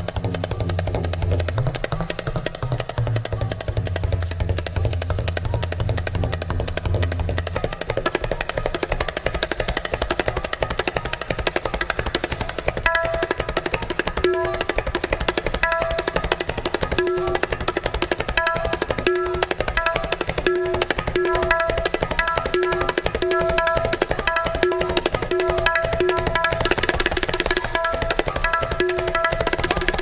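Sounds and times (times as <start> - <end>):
tabla fast strokes: 0.0 - 30.0
held notes repeating figure: 11.6 - 30.0.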